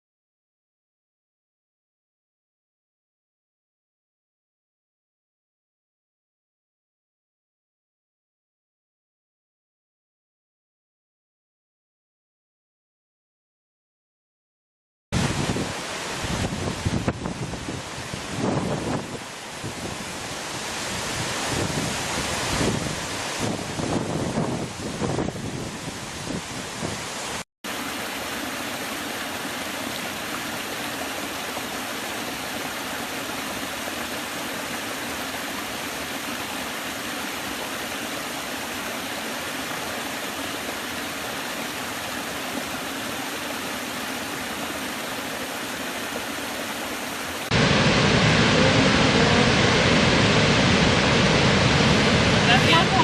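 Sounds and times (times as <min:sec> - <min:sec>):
waterfall rushing: 0:15.2 - 0:53.0.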